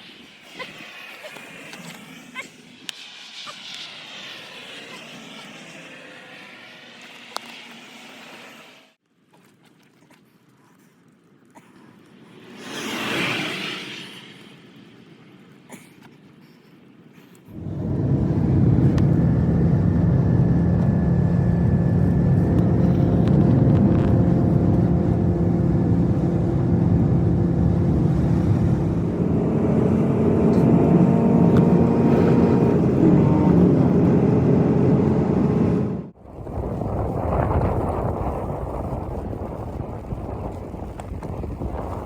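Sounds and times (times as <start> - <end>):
vehicle engine running: 17.5 - 36.1.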